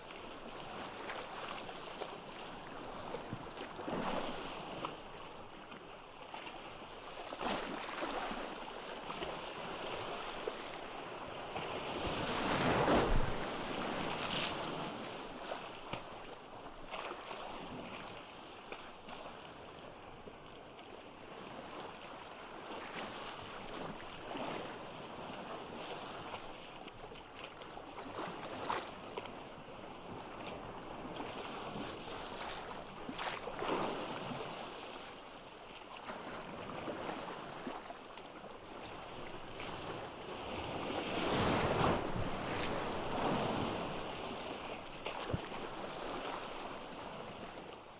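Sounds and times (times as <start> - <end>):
ocean waves breaking on beach: 39.8 - 47.7.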